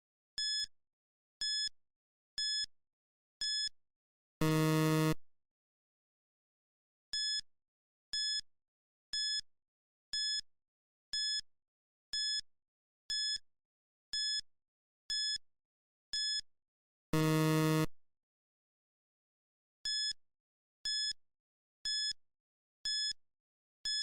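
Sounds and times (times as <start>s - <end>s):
low buzzer tone: 4.4s - 5.2s, 17.2s - 17.9s.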